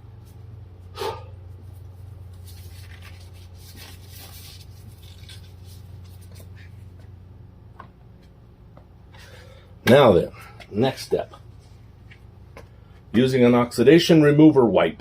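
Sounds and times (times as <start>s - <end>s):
steady low hum: 0.0s - 15.0s
hands rustling and rubbing: 1.5s - 7.1s.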